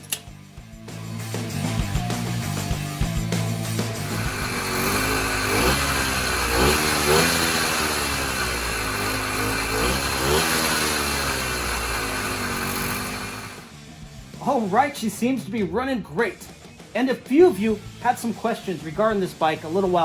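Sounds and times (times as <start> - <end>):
two-stroke engine revving: 1.6 - 13.7.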